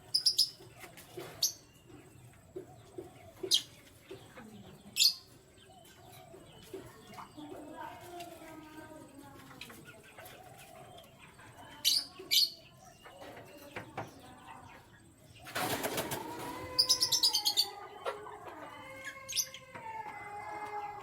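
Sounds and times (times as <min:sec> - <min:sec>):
birds low wavering calls: 0:00.0 - 0:07.8, 0:14.7 - 0:21.0
birds sharp high chirps: 0:00.0 - 0:07.9, 0:09.4 - 0:19.8
wings fluttering: 0:15.5 - 0:17.2.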